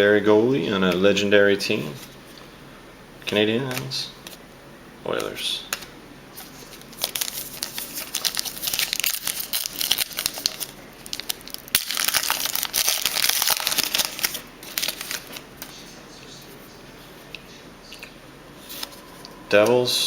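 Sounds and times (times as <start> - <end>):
plastic wrapper crinkling: 5.7 - 15.8.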